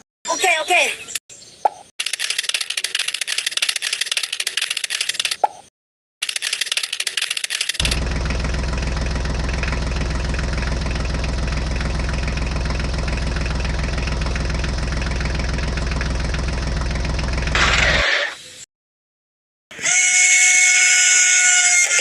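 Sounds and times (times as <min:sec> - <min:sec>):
tractor engine idling: 0:07.8 - 0:17.7.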